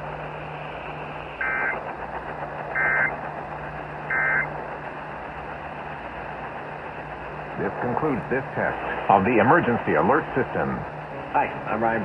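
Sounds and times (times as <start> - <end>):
radio hiss: 0.6 - 1.9, 2.8 - 3.2, 4.1 - 4.5, 7.6 - 12.0.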